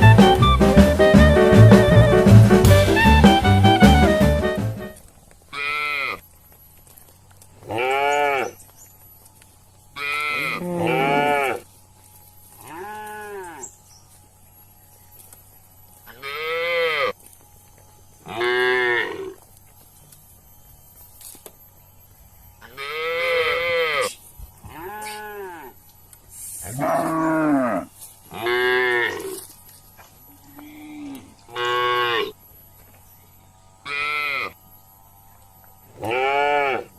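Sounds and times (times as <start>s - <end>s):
cattle mooing: 7.6s - 8.6s, 10.0s - 11.7s, 12.6s - 13.7s, 16.1s - 17.2s, 18.2s - 19.4s, 22.6s - 25.8s, 26.6s - 29.5s, 30.4s - 32.4s, 33.8s - 34.6s, 35.9s - 36.9s.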